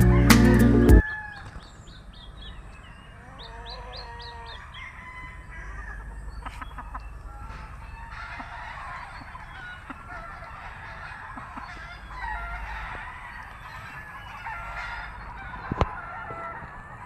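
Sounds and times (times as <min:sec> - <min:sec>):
chickens clucking: 0:00.0 - 0:01.7, 0:02.7 - 0:17.0
roosters crowing: 0:00.0 - 0:01.8, 0:03.0 - 0:17.0.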